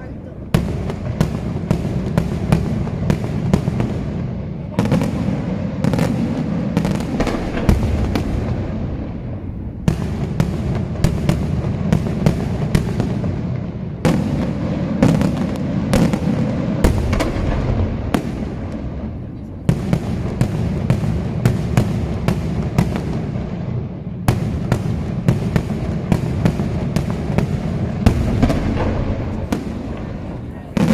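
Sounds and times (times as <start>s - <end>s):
low rumble of echoes: 6.5s - 12.8s, 16.9s - 20.4s, 28.0s - 30.9s.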